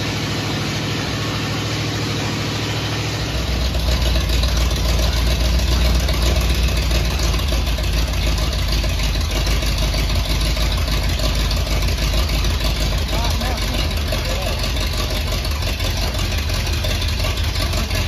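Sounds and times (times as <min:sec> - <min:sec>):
truck engine running with open exhaust: 0:00.0 - 0:18.0.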